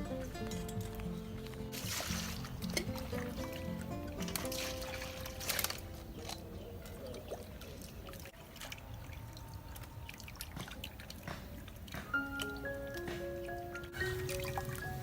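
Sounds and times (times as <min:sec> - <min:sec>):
water pouring and trickling: 0:00.2 - 0:15.0.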